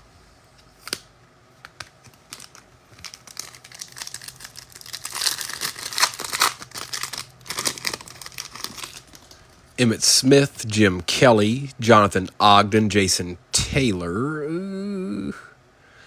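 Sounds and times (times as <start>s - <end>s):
foil wrapper crinkling and tearing: 2.0s - 9.6s.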